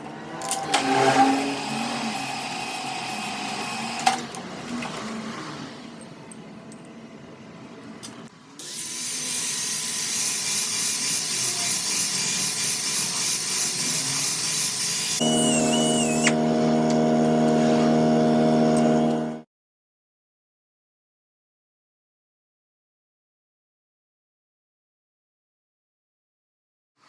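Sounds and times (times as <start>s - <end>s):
power tool hissing on metal: 8.6s - 16.5s
humming motor tone: 15.2s - 19.4s.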